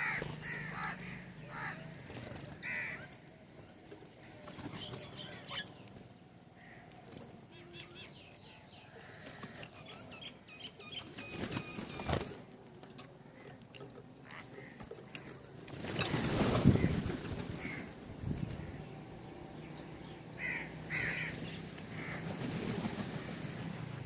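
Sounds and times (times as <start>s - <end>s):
birds chirping: 0.0s - 24.0s
rustle: 0.0s - 24.0s
small clicks: 6.7s - 9.8s.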